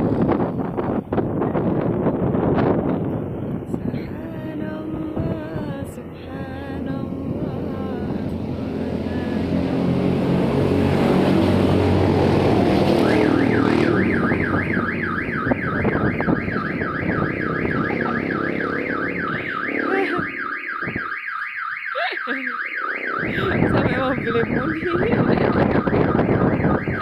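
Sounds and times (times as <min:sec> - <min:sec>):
vehicle engine running: 0:01.6 - 0:21.0, 0:23.0 - 0:27.0
electronic alarm warbling: 0:10.7 - 0:27.0.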